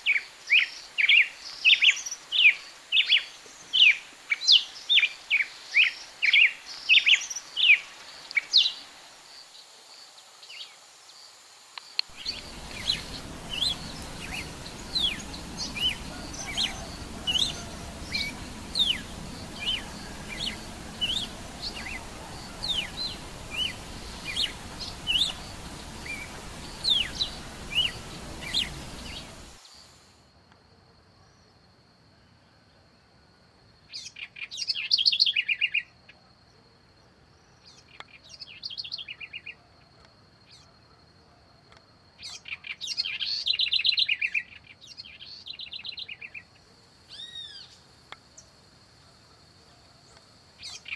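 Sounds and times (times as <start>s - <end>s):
songbird calling: 0.0s - 8.9s, 12.0s - 29.9s, 42.2s - 47.8s, 49.7s - 50.9s
steady background hiss: 0.0s - 50.9s.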